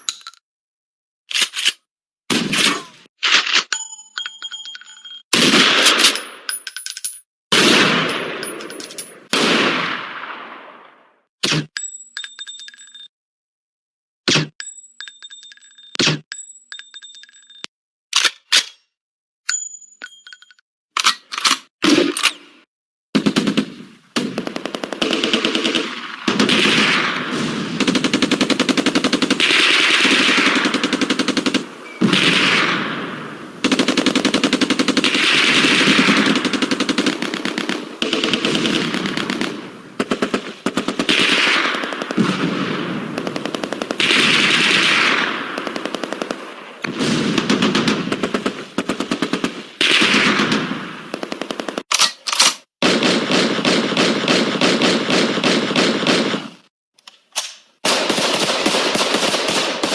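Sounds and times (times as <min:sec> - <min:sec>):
machine gun firing bursts: 0:23.2 - 0:51.9, 0:52.8 - 0:56.4, 0:57.8 - 0:59.9.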